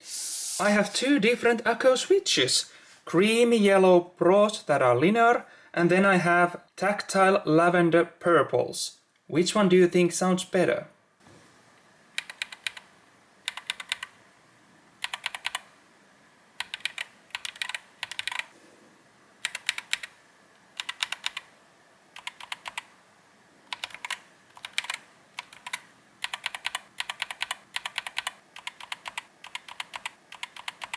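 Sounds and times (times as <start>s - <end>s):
mechanical keyboard typing: 12.2s - 14.2s, 15.0s - 15.7s, 16.6s - 18.5s, 19.4s - 20.2s, 20.8s - 21.5s, 22.2s - 22.9s, 23.7s - 30.9s.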